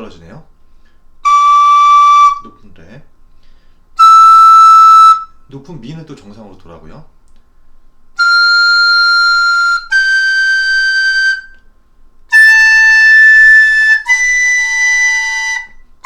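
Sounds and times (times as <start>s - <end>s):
recorder playing high notes: 1.2s - 2.4s, 4.0s - 5.3s, 8.2s - 11.5s, 12.3s - 15.8s.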